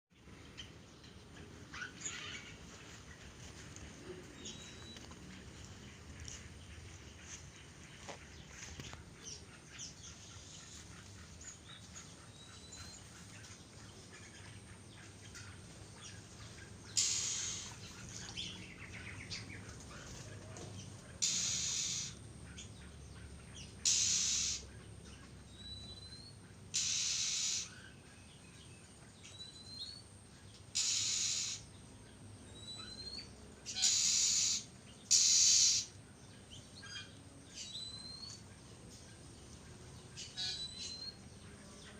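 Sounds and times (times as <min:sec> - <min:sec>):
harsh raspy bird calls: 0:16.8 - 0:18.0, 0:21.2 - 0:24.8, 0:25.9 - 0:28.0, 0:30.7 - 0:31.7, 0:32.6 - 0:36.0
thin rising bird chirps: 0:16.9 - 0:18.6, 0:21.2 - 0:22.2, 0:23.8 - 0:24.7, 0:25.5 - 0:28.2, 0:30.7 - 0:31.7, 0:32.5 - 0:36.0, 0:36.6 - 0:38.5, 0:40.2 - 0:41.3.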